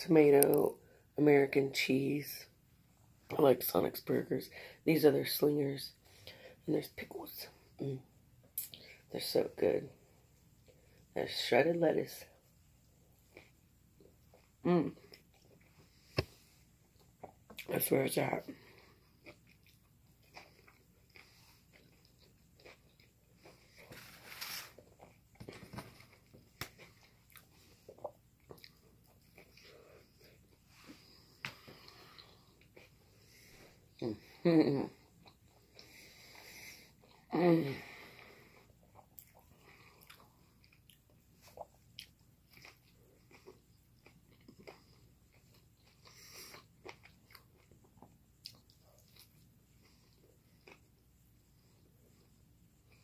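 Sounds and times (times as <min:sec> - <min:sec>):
chewing and biting food: 0:18.6 - 0:30.6, 0:38.6 - 0:51.2.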